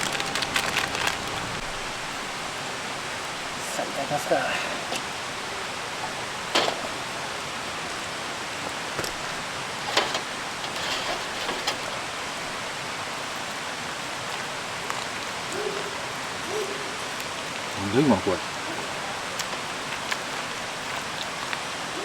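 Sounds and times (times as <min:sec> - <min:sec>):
fire popping: 0:00.0 - 0:03.6, 0:04.6 - 0:15.5
fire hissing: 0:00.0 - 0:14.8
campfire crackling: 0:00.0 - 0:22.0.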